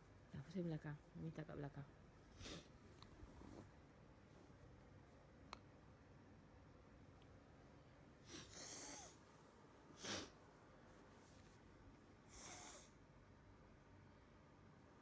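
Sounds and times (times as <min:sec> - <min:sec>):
child sniffing through blocked nose: 0:02.4 - 0:02.7, 0:08.2 - 0:09.2, 0:10.0 - 0:10.3, 0:12.3 - 0:12.9.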